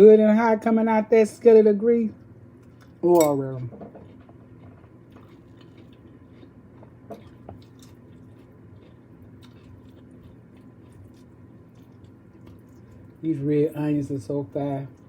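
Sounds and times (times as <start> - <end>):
low steady hum: 0.0 - 15.0
person chewing: 3.8 - 13.2.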